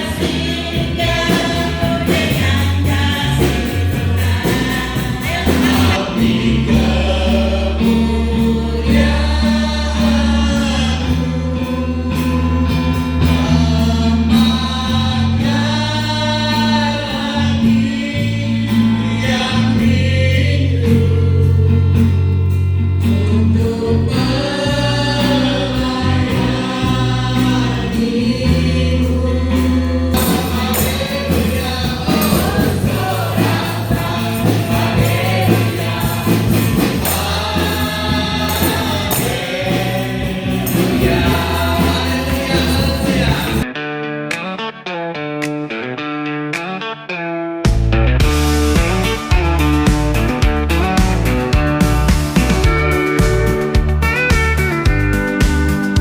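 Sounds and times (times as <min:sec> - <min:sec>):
choir-like singing: 0:00.0 - 0:20.9, 0:23.6 - 0:43.7
sustained bass line: 0:00.0 - 0:43.7, 0:47.7 - 0:56.0.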